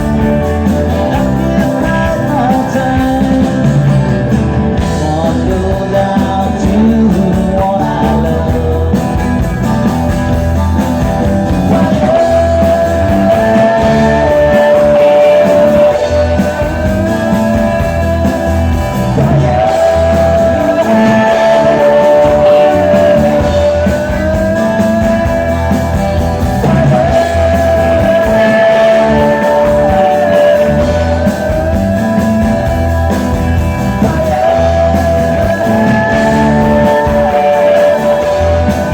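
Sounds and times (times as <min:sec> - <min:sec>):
electric guitar: 0:00.0 - 0:38.9
live rock band playing: 0:00.0 - 0:38.9
person singing long notes: 0:11.6 - 0:38.9.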